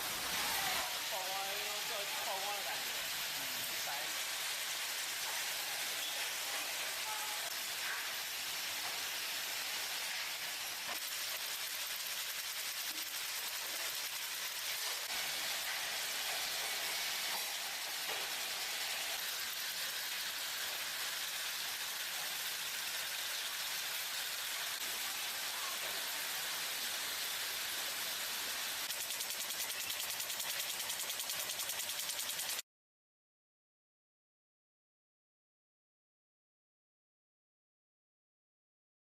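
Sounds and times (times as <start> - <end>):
steady machine hiss: 0.0 - 32.6.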